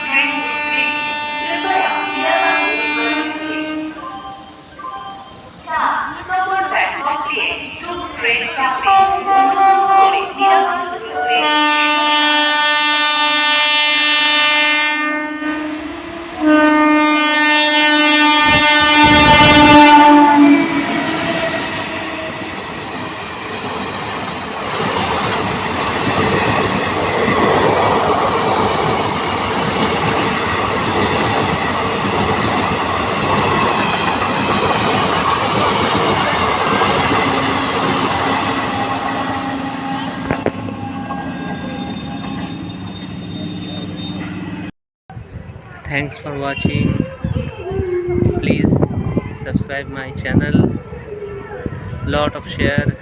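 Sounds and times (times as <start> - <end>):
train horn blasts: 0.0 - 4.2, 8.9 - 22.8, 36.3 - 44.7
train running on track: 0.0 - 53.0.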